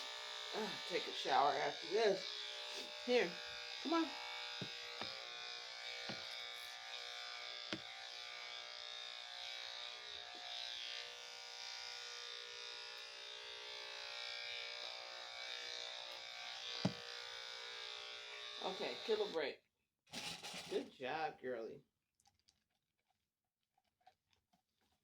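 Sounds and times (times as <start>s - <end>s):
electric clippers buzzing: 0.0s - 19.5s.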